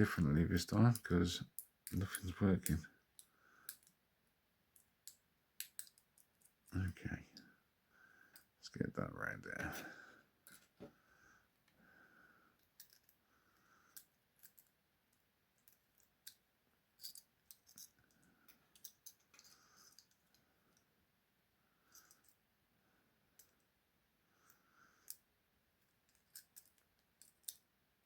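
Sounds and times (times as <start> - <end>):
lock picks clicking and scraping: 0.9 - 4.0, 4.7 - 6.7, 12.6 - 13.2, 13.9 - 20.9, 21.9 - 22.4, 23.4 - 23.6, 24.4 - 27.7.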